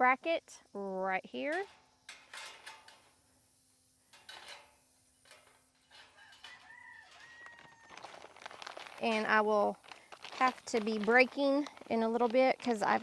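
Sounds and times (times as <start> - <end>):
rooster crowing: 6.2 - 8.0.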